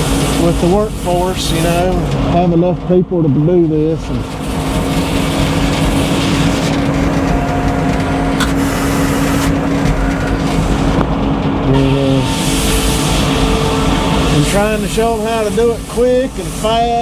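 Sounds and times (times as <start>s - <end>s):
saw hissing: 0.0s - 2.0s, 11.8s - 17.0s
sawmill machinery drone: 0.0s - 17.0s.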